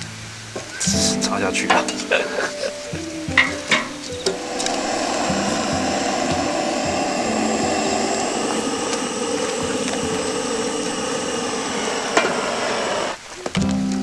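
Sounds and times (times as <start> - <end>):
gas burner hissing roar: 0.0 - 13.3.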